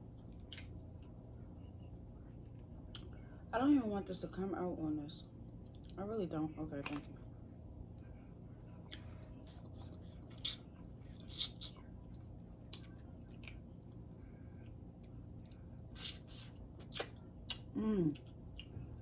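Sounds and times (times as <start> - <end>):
food being bitten and chewed: 8.9 - 18.8.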